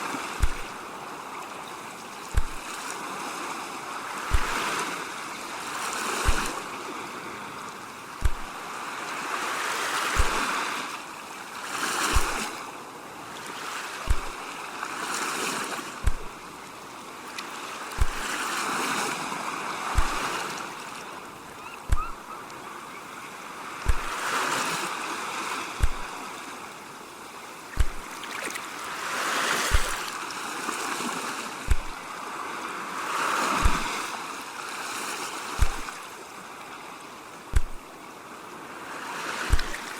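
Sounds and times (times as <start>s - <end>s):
ocean waves washing in: 0.0s - 39.9s
soft low thump: 0.4s - 0.8s, 2.4s - 2.7s, 4.3s - 4.6s, 6.2s - 6.6s, 8.2s - 8.6s, 10.2s - 10.5s, 12.1s - 12.5s, 14.1s - 14.4s, 16.0s - 16.4s, 18.0s - 18.3s, 20.0s - 20.3s, 21.9s - 22.3s, 23.9s - 24.2s, 25.8s - 26.1s, 27.8s - 28.1s, 29.7s - 30.0s, 31.7s - 32.0s, 33.6s - 34.0s, 35.6s - 36.0s, 37.5s - 37.9s, 39.5s - 39.9s.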